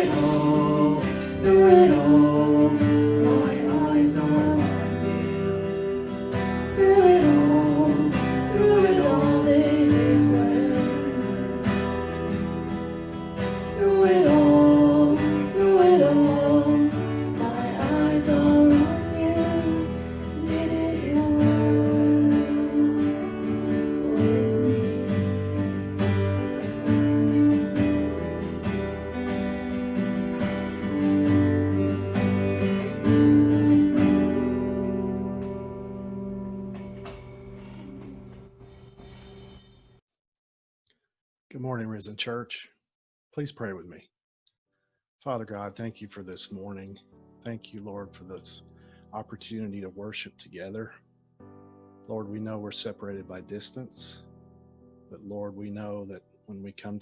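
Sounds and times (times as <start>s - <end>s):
worship music with acoustic guitar: 0.0s - 39.8s.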